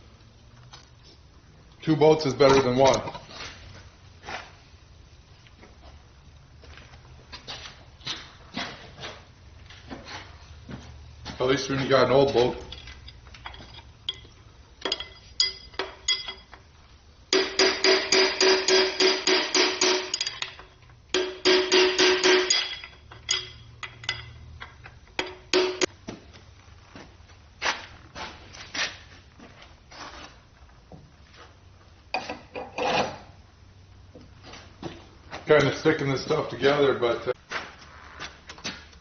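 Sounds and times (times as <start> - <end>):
hammer striking metal: 17.3 - 24.3, 25.2 - 25.9.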